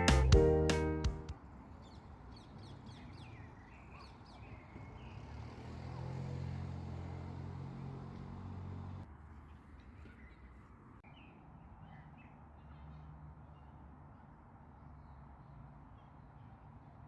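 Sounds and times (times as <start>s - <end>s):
engine humming: 0.0s - 1.8s, 2.6s - 9.1s.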